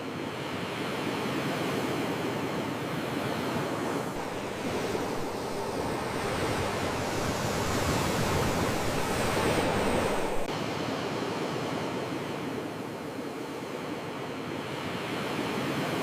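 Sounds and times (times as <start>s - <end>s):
sea waves washing in: 1.3s - 13.2s.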